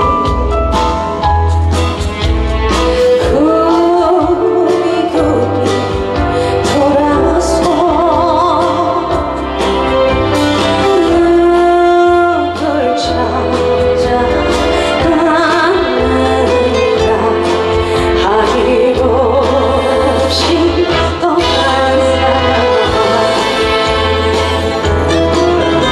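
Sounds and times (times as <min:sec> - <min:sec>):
amplified backing music: 0:00.0 - 0:25.9
woman singing with vibrato: 0:03.0 - 0:09.7, 0:10.8 - 0:25.9.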